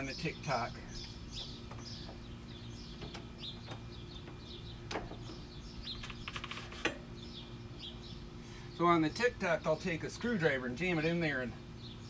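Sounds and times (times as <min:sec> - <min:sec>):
small birds chirping: 0:00.0 - 0:12.0
sharp clicks: 0:05.8 - 0:07.0.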